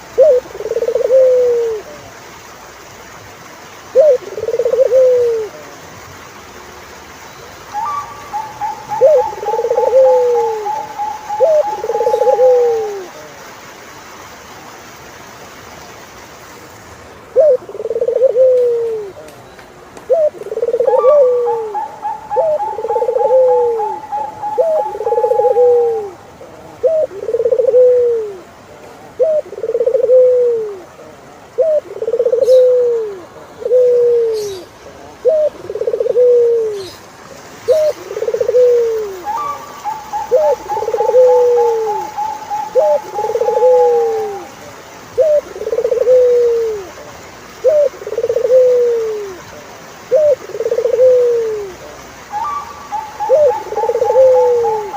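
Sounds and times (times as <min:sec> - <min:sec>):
turtledoves cooing: 0:00.2 - 0:02.0, 0:04.0 - 0:05.6, 0:07.8 - 0:13.3, 0:17.4 - 0:19.2, 0:20.1 - 0:28.5, 0:29.1 - 0:37.0, 0:37.7 - 0:49.5, 0:50.1 - 0:54.9
high trilling bird call: 0:07.7 - 0:13.0, 0:20.8 - 0:26.1, 0:39.2 - 0:44.4, 0:52.3 - 0:54.9.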